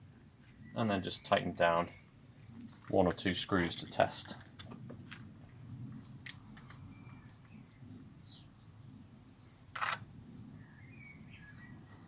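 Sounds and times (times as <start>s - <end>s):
faint bird chirps: 6.6s - 12.0s.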